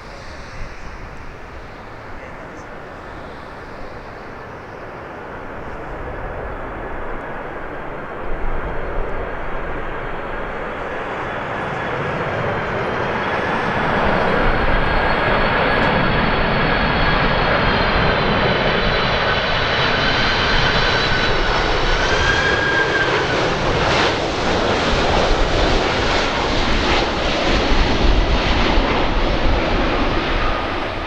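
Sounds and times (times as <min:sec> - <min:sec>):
jet engine rush and whine: 0:00.0 - 0:31.0.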